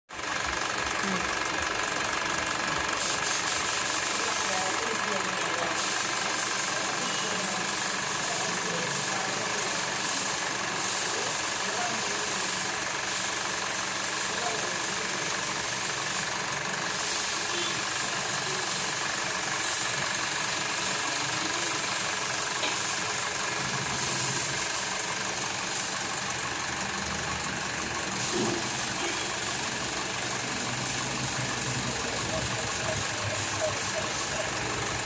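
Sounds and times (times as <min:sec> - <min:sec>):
motorcycle engine running: 0:00.1 - 0:35.0.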